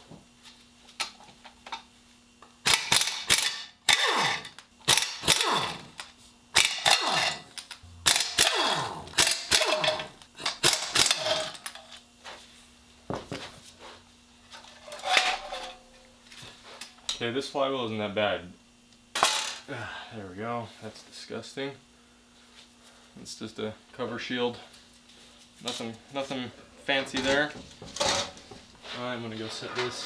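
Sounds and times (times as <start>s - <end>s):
impact wrench hammering bolts: 2.7s - 12.0s.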